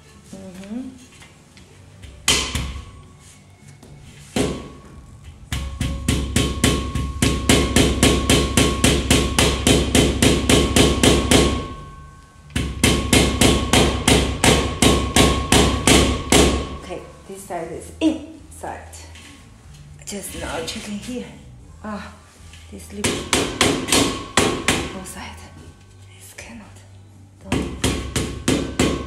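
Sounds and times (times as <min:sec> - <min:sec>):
rapid hammer strikes: 0:05.5 - 0:11.8, 0:12.5 - 0:16.8, 0:23.0 - 0:25.0, 0:27.5 - 0:29.0.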